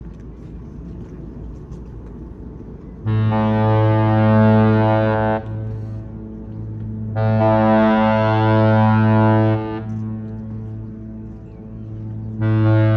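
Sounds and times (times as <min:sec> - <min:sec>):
deep ship horn blast: 0:03.0 - 0:10.9, 0:12.3 - 0:12.9.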